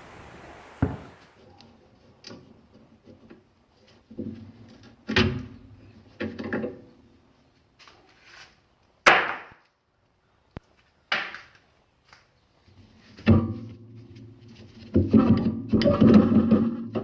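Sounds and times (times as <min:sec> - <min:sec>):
low steady hum: 0:00.0 - 0:01.4.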